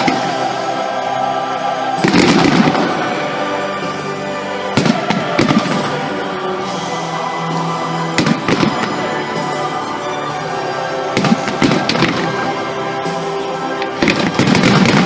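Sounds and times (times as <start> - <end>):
fireworks crackling bursts: 0.0 - 15.0
music playing: 0.0 - 15.0
fireworks sharp bangs: 2.0 - 3.2, 4.7 - 6.1, 11.2 - 12.5, 13.9 - 15.0.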